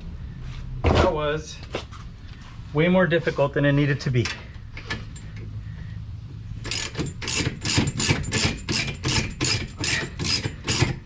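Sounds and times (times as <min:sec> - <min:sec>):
hand tool rasping strokes: 0:06.7 - 0:11.0.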